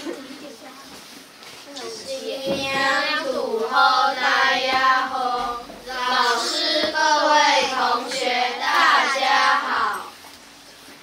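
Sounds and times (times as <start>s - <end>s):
children singing: 2.0s - 10.2s.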